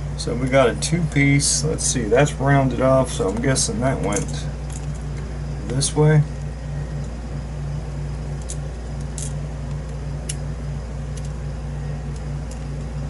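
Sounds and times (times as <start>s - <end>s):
steady low hum: 0.0s - 13.0s
small metal parts clicking: 3.1s - 5.8s, 8.3s - 10.5s, 11.1s - 11.4s, 12.0s - 12.9s.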